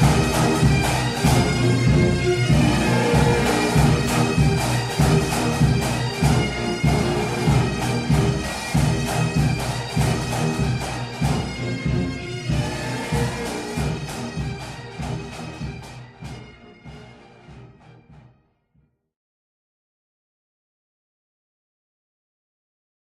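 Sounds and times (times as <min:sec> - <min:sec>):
bagpipes playing a tune: 0:00.0 - 0:17.8
regular beat: 0:00.0 - 0:18.3.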